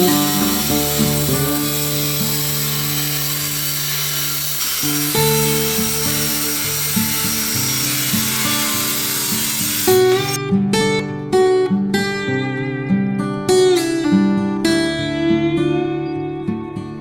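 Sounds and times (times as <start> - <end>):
steady hiss: 0.0 - 10.4.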